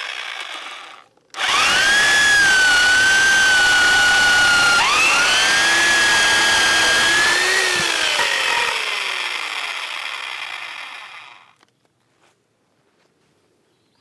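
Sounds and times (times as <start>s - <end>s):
power tool motor whining: 0.0s - 11.6s.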